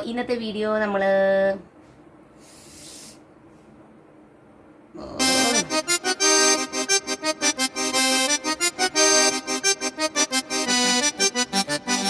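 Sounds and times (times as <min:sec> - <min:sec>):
accordion-like background music: 0:05.2 - 0:12.0.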